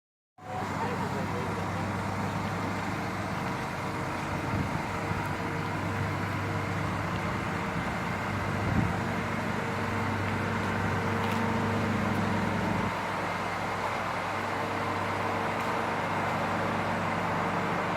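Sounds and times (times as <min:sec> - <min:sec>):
mechanical hum and rumble: 0:00.6 - 0:17.9.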